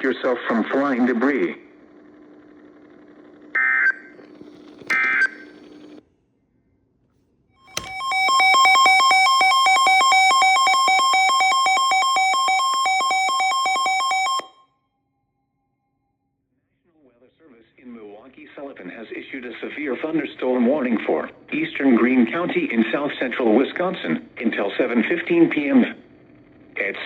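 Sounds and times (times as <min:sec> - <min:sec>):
radio data tones: 0:00.0 - 0:06.0, 0:18.8 - 0:27.0.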